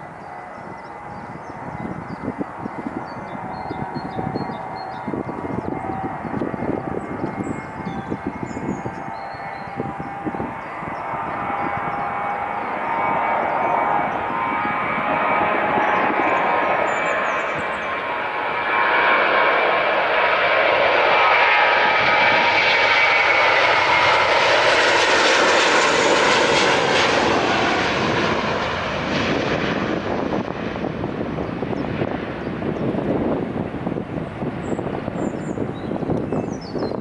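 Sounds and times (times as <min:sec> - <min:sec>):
jet engines roaring: 0:00.0 - 0:37.0
whining jet fan tone: 0:00.0 - 0:37.0.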